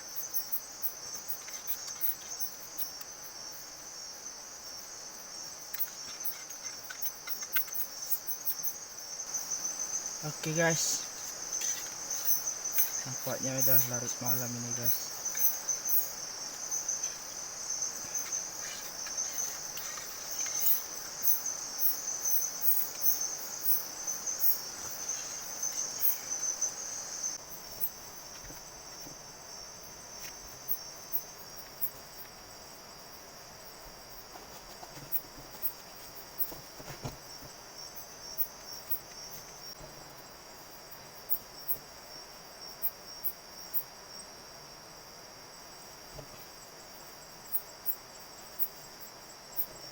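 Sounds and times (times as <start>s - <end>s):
sharp insect ticks: 0.0s - 32.5s
insects trilling: 0.0s - 49.9s.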